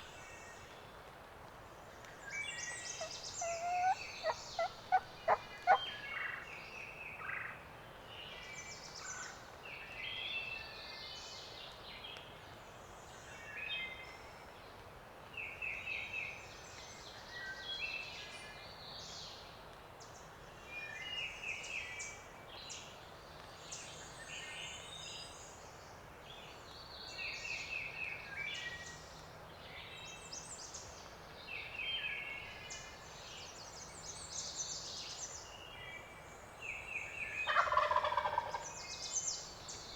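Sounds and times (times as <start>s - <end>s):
songbirds singing: 2.2s - 6.5s
turkey gobble: 3.0s - 5.8s, 37.5s - 38.7s.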